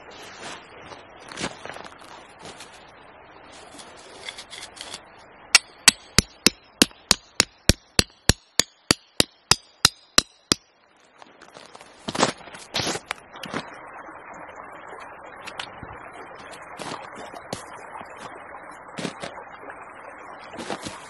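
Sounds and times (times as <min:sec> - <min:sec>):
tool scraping wood: 0:03.8 - 0:05.0
sharp strikes on wood: 0:05.6 - 0:10.6.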